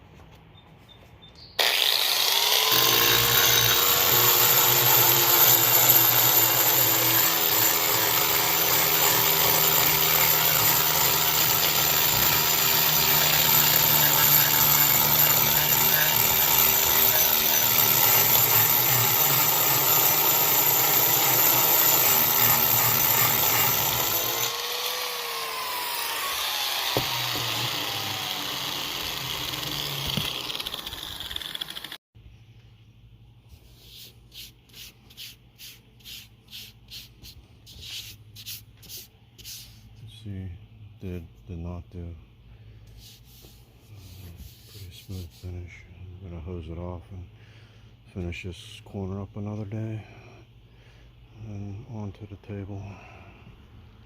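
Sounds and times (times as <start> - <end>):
angle grinder grinding concrete: 1.6 - 32.0.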